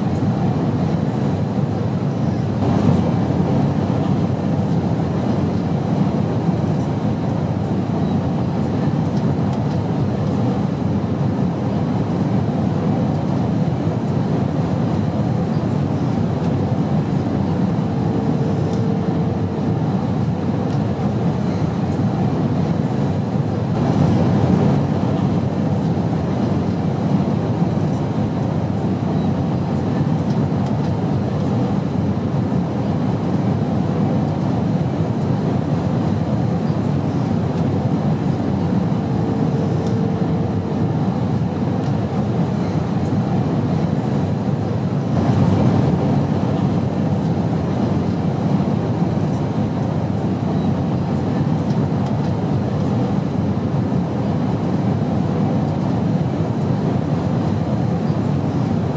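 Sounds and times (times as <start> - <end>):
airplane drone: 0.0 - 58.9.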